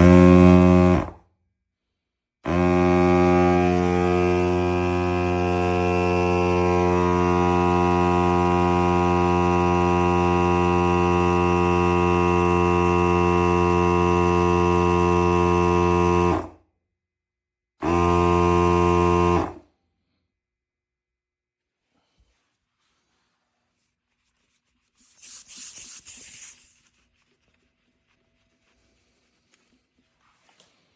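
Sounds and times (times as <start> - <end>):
air compressor humming: 0.0 - 1.2, 2.5 - 16.5, 17.8 - 19.6.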